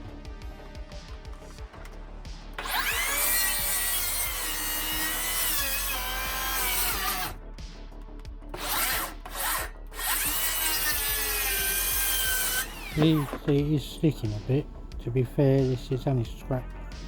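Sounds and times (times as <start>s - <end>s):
circular saw cutting chipboard: 2.6s - 7.4s, 8.5s - 14.6s.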